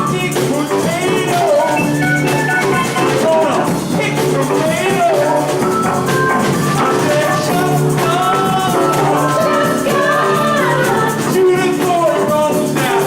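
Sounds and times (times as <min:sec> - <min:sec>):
live band playing: 0:00.0 - 0:13.0
person singing: 0:00.0 - 0:13.0.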